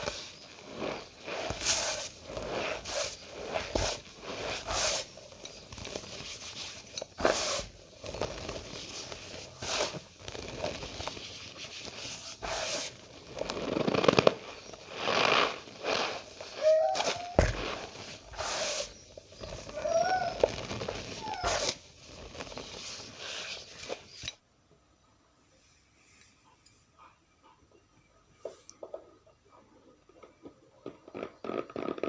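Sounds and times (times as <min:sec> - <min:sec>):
cornstarch squeaking when squeezed: 0:14.4 - 0:24.2.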